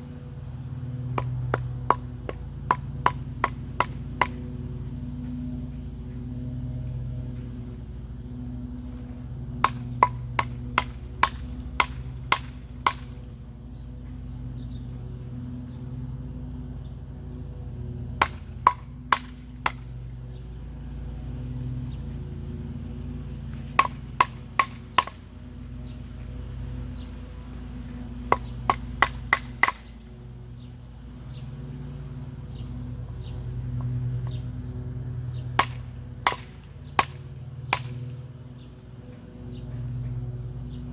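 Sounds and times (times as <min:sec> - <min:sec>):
steady low hum: 0:00.0 - 0:40.9
sharp blows on wood: 0:09.6 - 0:13.2, 0:18.2 - 0:19.8, 0:23.7 - 0:25.2, 0:28.2 - 0:29.9, 0:35.6 - 0:38.0.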